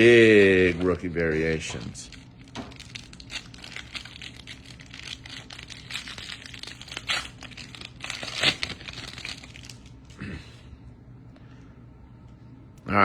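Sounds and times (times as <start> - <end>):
foil wrapper crinkling and tearing: 0.0 - 10.2.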